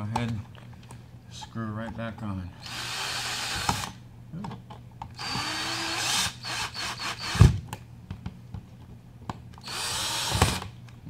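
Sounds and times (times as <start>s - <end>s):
power drill driving screws: 2.6s - 4.0s, 5.2s - 7.6s, 9.6s - 10.7s.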